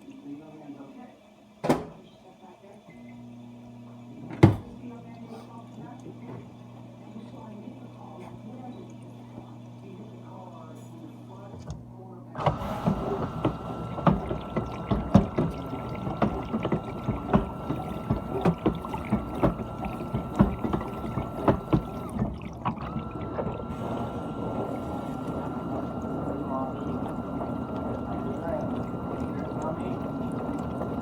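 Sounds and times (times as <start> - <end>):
high pump whine: 6.6 - 31.0
water sloshing and spraying: 12.4 - 31.0
knocks of water striking: 12.7 - 31.0.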